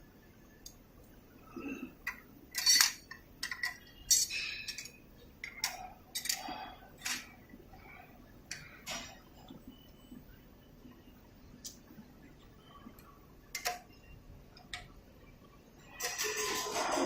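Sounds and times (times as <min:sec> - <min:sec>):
metallic clicks and clinks: 0:02.1 - 0:07.4.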